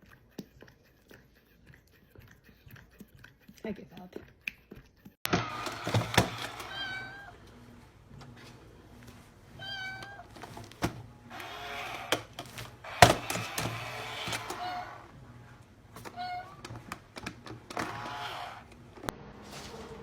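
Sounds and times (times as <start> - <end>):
cat meowing: 6.3 - 7.4, 9.6 - 10.3, 12.9 - 15.1, 16.0 - 16.8
sharp knocks or thumps: 10.4 - 14.8.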